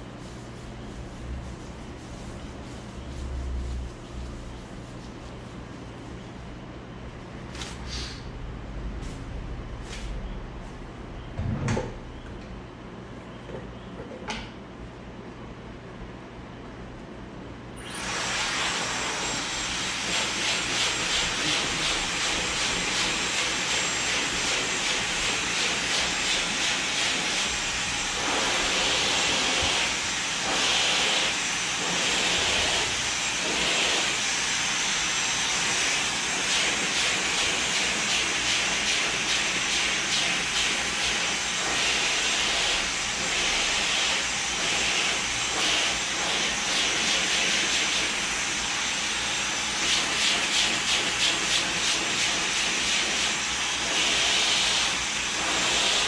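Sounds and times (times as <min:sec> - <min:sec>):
hair dryer blowing: 0:17.8 - 0:56.0.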